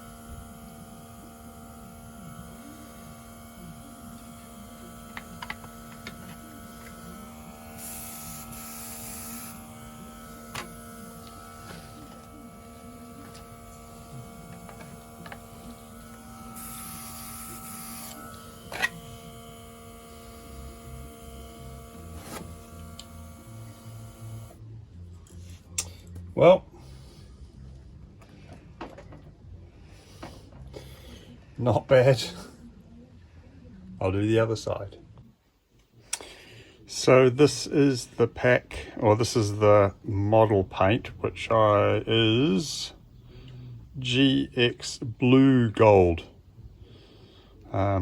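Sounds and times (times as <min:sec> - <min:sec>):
steady electrical hum: 0:00.0 - 0:33.1.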